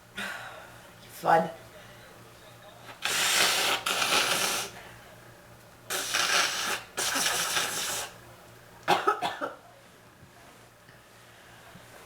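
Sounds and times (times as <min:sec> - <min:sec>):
woman coughing: 0:08.9 - 0:09.6.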